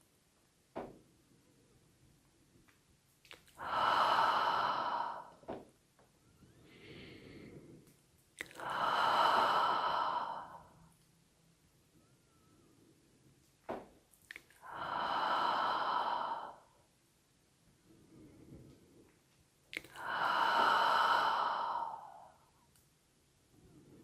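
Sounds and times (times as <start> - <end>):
soft in-breath: 3.4 - 5.7, 6.4 - 11.0, 14.5 - 17.0, 19.8 - 22.7
person exhaling breathily: 3.6 - 5.4, 8.4 - 10.8, 14.6 - 16.8, 19.9 - 22.7.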